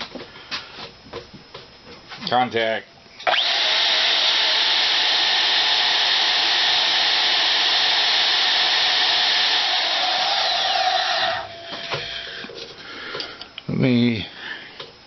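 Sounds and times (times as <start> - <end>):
band saw motor whine: 3.2 - 12.5.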